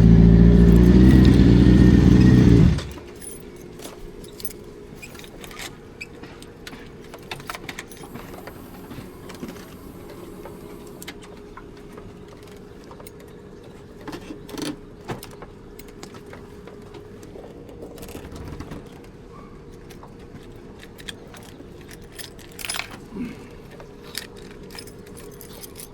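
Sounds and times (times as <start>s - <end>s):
low hum: 0.0s - 3.3s
metallic clicks and jangles: 0.6s - 5.8s, 19.7s - 23.1s, 23.7s - 25.9s.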